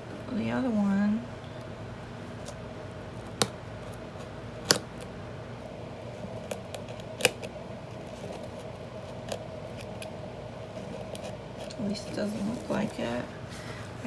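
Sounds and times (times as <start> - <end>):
steady low hum: 0.0 - 14.0
blade snipping through book binding: 3.2 - 5.1, 6.2 - 12.3.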